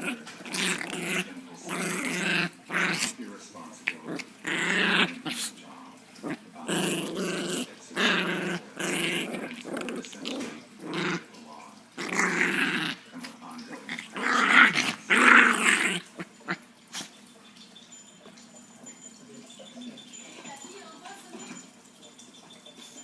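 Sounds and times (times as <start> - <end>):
small dog play-growling: 0.0 - 17.3.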